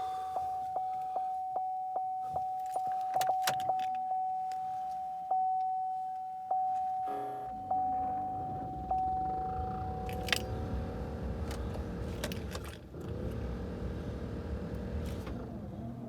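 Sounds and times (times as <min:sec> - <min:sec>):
electronic chime tone: 0:05.3 - 0:10.4.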